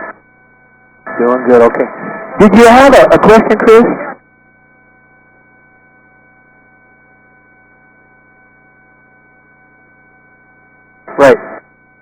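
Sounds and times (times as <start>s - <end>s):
faint electrical hum: 0.0s - 12.0s.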